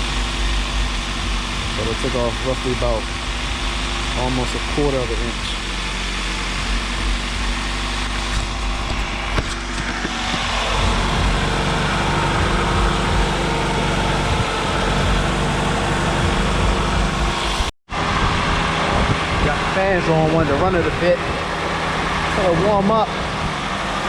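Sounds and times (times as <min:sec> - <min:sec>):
car engine idling: 0:00.0 - 0:17.7
radiator cooling fans rushing: 0:00.0 - 0:24.0.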